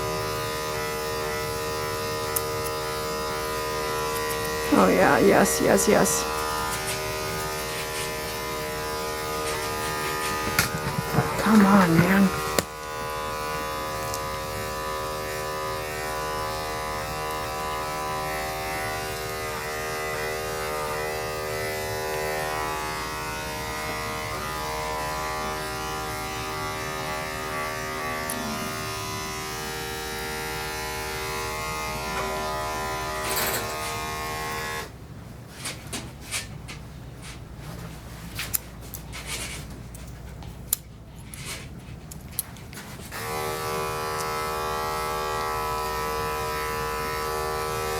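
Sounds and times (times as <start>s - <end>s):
electric hair clippers humming: 0.0s - 35.0s, 43.1s - 47.9s.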